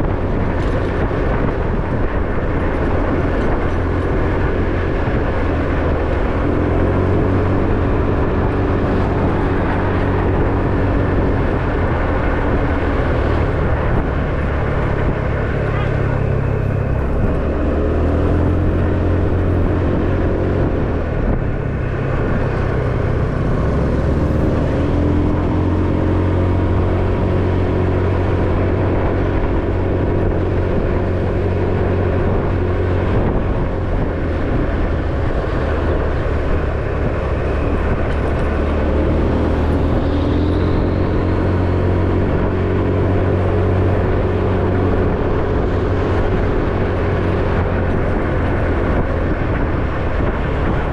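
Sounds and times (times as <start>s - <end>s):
motorcycle engine running: 0.0s - 50.9s
road and wind noise: 0.0s - 50.9s.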